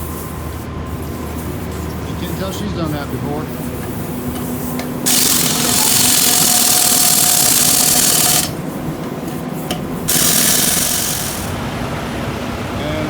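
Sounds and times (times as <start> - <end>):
impact wrench running: 5.0 - 8.7, 10.1 - 11.6.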